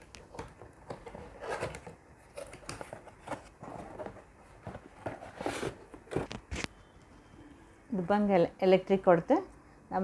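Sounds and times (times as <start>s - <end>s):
objects handled with rustles and scrapes: 0.0s - 7.3s.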